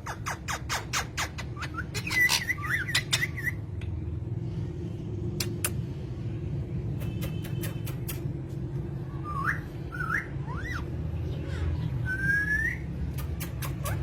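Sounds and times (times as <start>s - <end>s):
parrots chirping: 0.0s - 3.8s, 9.0s - 14.0s
steady low hum: 1.4s - 12.0s.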